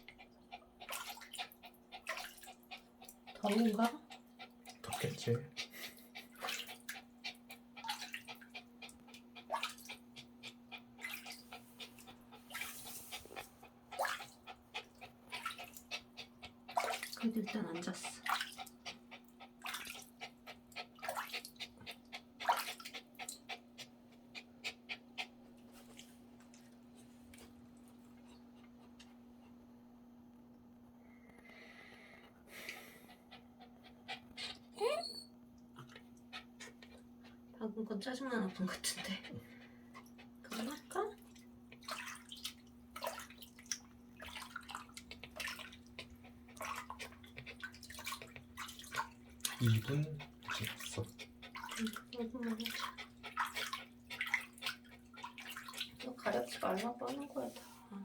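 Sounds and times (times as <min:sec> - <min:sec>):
water dripping: 0:40.5 - 0:57.2
water splashing: 0:40.5 - 0:57.7.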